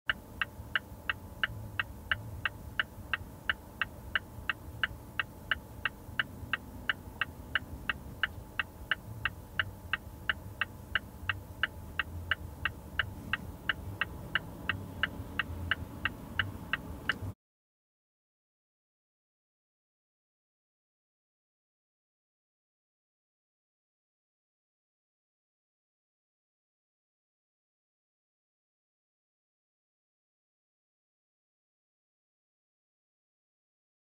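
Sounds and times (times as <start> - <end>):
turn signal ticking: 0.0 - 17.4
car hum: 0.1 - 17.4.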